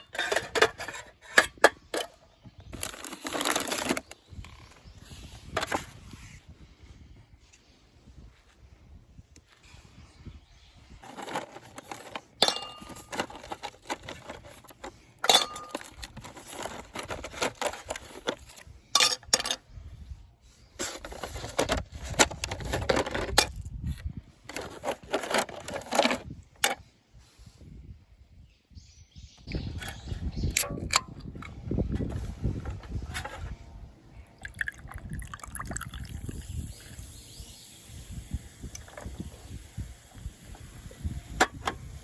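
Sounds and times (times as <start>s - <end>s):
small hard objects clinking: 2.7s - 4.2s, 11.0s - 19.6s.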